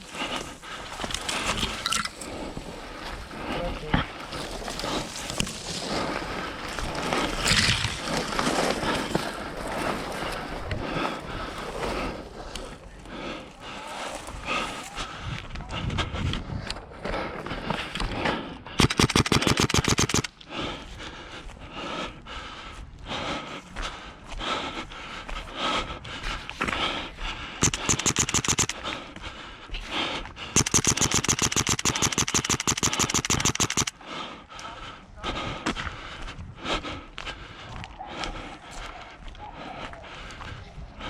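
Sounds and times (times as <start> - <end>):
airsoft gun full-auto bursts: 18.8 - 20.3, 27.6 - 28.8, 30.6 - 33.9.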